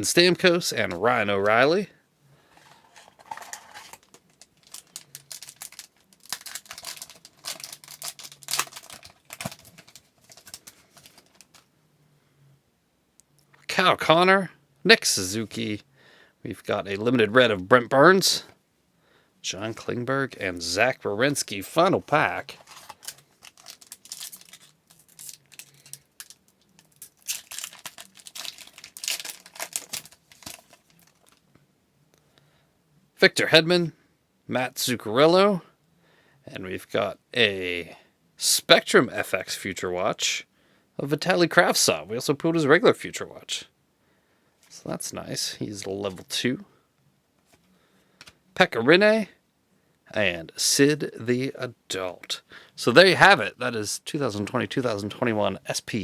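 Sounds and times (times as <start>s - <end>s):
trading cards shuffled: 2.5s - 11.6s, 22.0s - 31.4s
wrapper tearing and crinkling: 2.6s - 11.6s, 22.1s - 31.4s.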